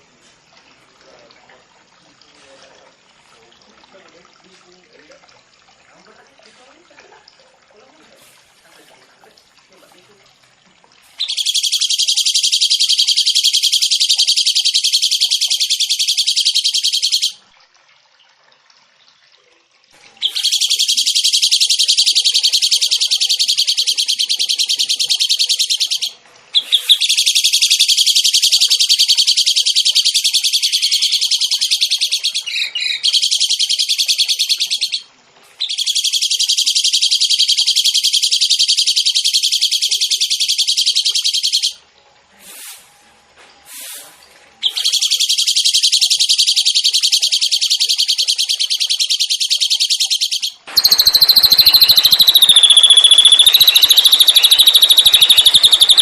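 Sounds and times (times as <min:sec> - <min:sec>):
songbird high rapid trills: 0:11.2 - 0:17.4, 0:20.2 - 0:41.8, 0:44.6 - 0:56.0.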